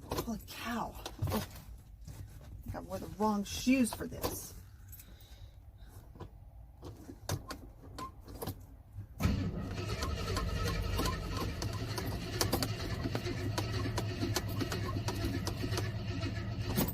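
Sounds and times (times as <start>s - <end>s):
engine starting and running: 9.2s - 16.9s.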